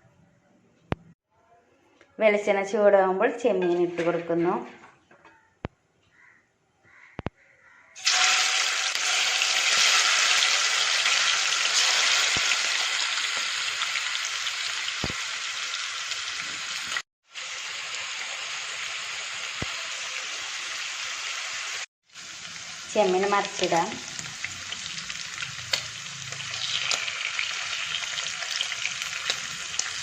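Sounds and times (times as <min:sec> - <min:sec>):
prawns sizzling in hot oil: 0:08.0 - 0:30.0.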